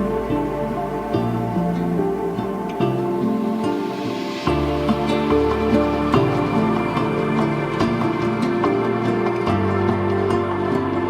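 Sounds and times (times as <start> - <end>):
calm new-age background music: 0.0 - 11.0.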